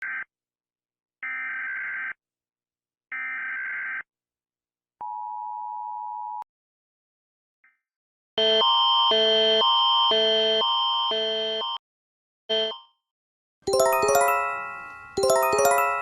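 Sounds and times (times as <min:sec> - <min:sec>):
two-note attention tone: 0:13.7 - 0:16.0.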